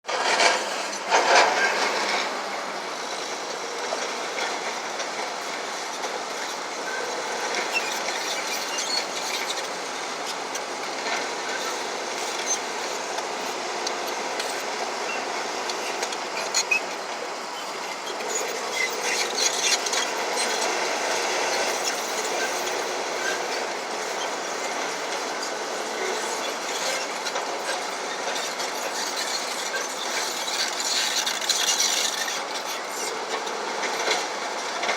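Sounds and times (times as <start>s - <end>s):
heavy machinery running: 0.1s - 34.9s
metallic clanks and squeals: 6.9s - 13.2s, 14.4s - 34.9s.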